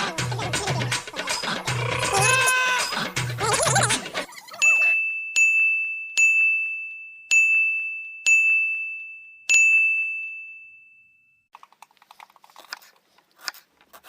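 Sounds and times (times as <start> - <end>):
metallic bell ding: 4.5 - 11.4.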